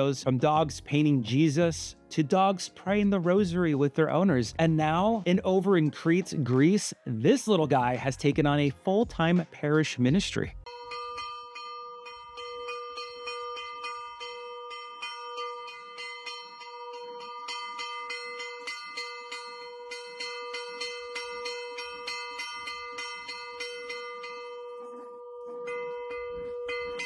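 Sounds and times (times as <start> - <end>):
church bell ringing: 10.7 - 27.0.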